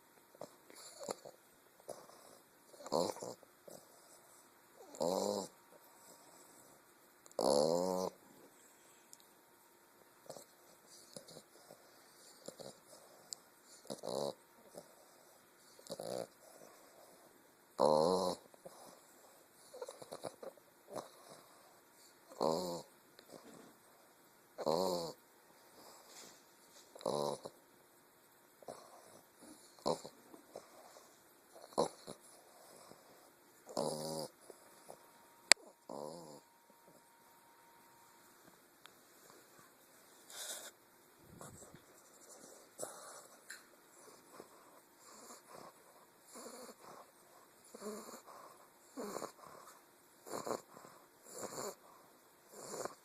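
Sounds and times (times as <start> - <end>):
puppy snoring: 0.3 - 9.1, 10.2 - 24.0, 24.6 - 27.6, 28.6 - 38.0, 39.2 - 53.0
soft snuffling breaths: 38.9 - 53.0.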